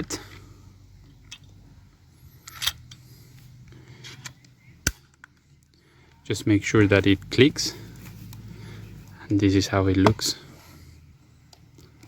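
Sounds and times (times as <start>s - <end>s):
staple magazine latching click: 4.2s - 5.4s.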